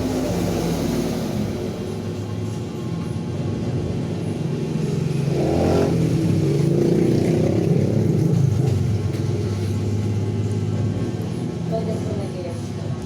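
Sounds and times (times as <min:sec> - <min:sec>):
vehicle engine revving: 0:00.0 - 0:02.5.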